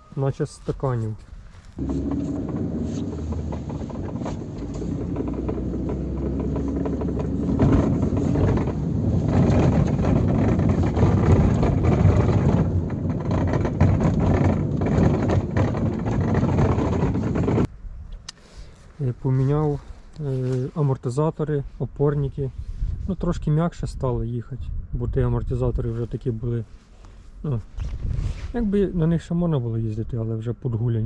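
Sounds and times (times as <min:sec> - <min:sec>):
knocking and rattling over bumps: 0:01.8 - 0:17.7
road noise inside moving car: 0:01.8 - 0:17.7.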